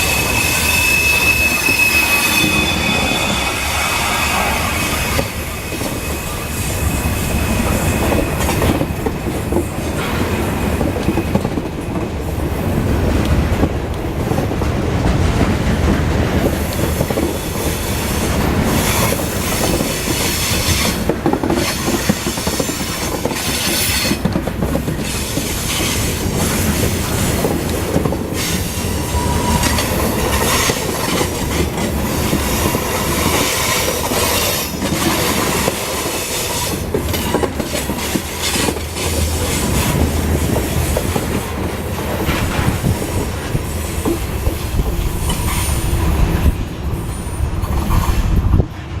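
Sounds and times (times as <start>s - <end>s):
thin wheel squeal: 0.0s - 8.5s.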